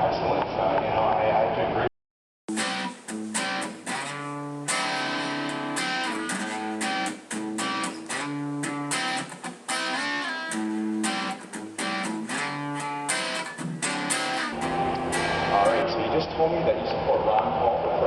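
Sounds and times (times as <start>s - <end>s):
guitar strumming chords: 2.5s - 16.1s.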